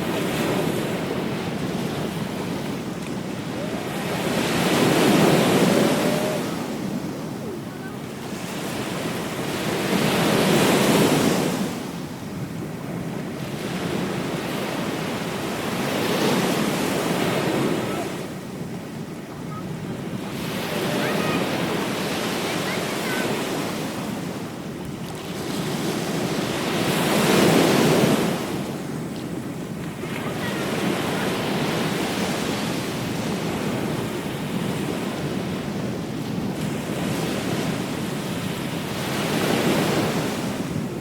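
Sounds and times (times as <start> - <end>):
ocean waves breaking on beach: 0.0 - 41.0.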